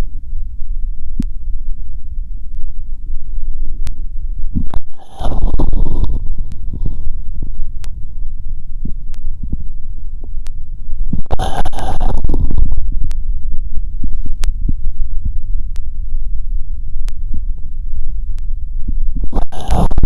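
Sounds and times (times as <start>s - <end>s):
low body rumble: 0.0s - 20.0s
faint clicks: 8.8s - 9.2s.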